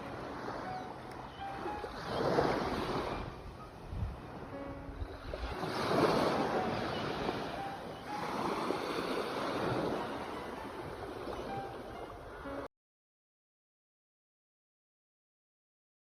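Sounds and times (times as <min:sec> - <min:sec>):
sea waves breaking: 0:00.0 - 0:12.7.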